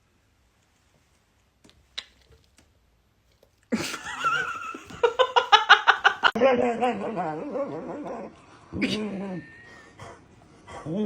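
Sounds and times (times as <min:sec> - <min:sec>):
person laughing: 0:03.7 - 0:06.4.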